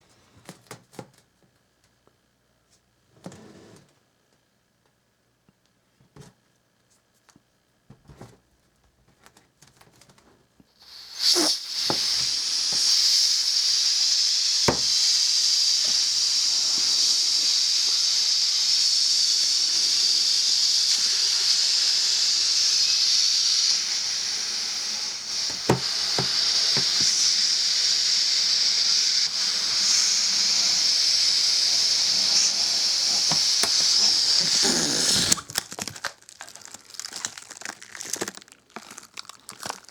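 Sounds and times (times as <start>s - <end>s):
rushing air hiss: 10.8s - 35.4s.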